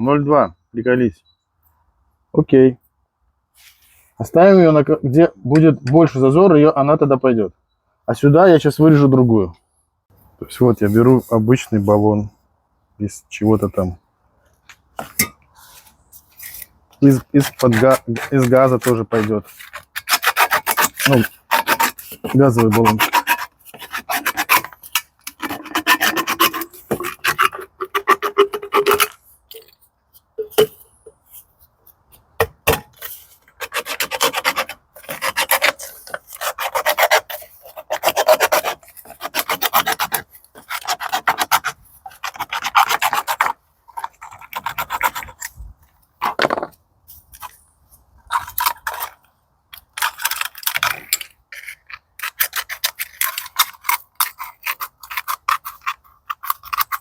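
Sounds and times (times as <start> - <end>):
hand tool rasping on steel: 16.4 - 29.8, 33.0 - 45.5, 49.8 - 57.0.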